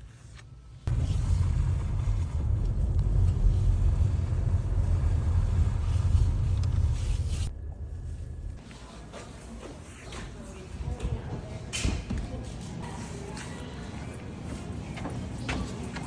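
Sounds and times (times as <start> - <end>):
car driving rumble: 0.9 - 8.6.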